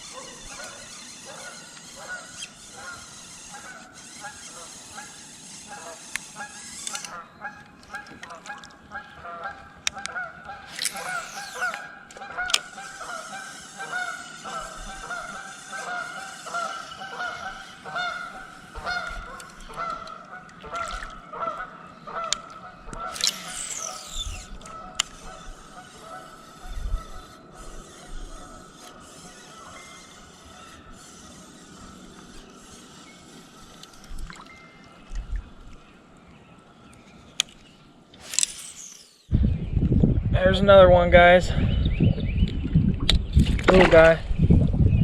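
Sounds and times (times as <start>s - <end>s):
geese honking: 0.0s - 32.9s
sharp clicks: 22.3s - 26.1s, 36.9s - 39.3s.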